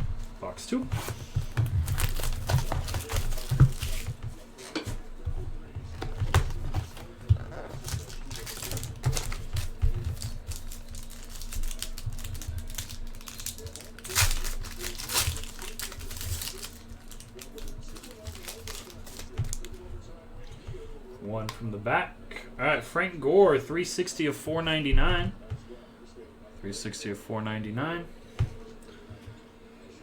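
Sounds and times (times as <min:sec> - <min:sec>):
cardboard scraping: 0:00.0 - 0:05.0, 0:05.8 - 0:12.3
wrapper crinkling: 0:01.0 - 0:04.2, 0:06.8 - 0:19.8
cards clicking and rustling: 0:01.0 - 0:04.9, 0:05.9 - 0:19.8.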